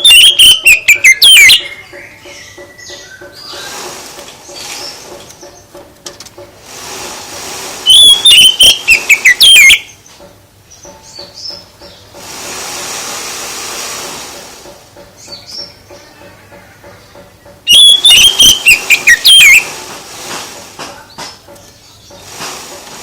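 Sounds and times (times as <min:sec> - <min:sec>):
songbird whistling song: 0:00.0 - 0:05.7, 0:07.8 - 0:12.1, 0:15.2 - 0:19.8.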